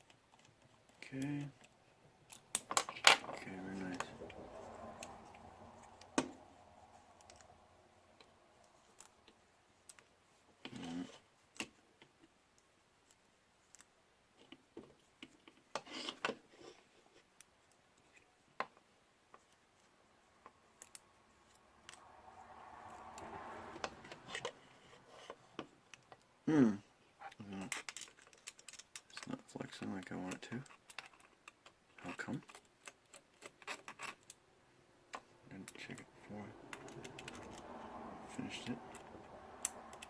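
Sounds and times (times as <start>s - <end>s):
clicks of small parts handled: 27.7s - 29.3s.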